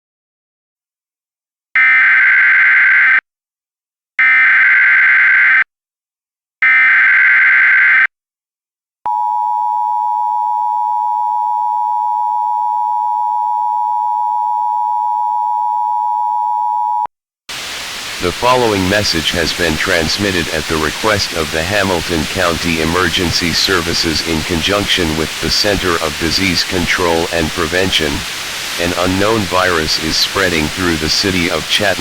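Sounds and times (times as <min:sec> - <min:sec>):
two-tone attention signal: 0:09.1 - 0:17.1.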